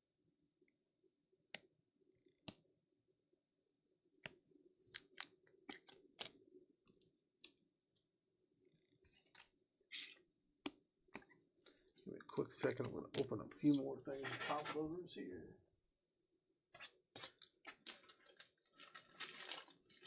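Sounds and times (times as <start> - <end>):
crinkly rustle: 17.2 - 20.0.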